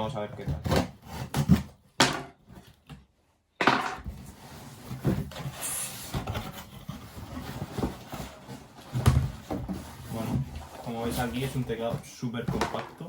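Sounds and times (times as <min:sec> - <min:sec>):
cardboard box rubbing and scraping: 0:04.1 - 0:12.2.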